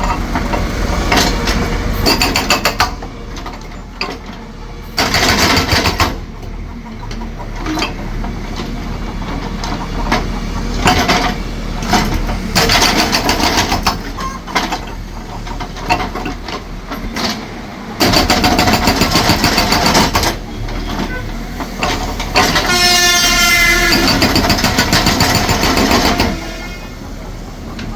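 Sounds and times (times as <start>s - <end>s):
concrete breaker hammering: 0.0s - 3.1s, 5.0s - 6.3s, 9.9s - 14.9s, 18.0s - 20.5s, 23.6s - 26.6s.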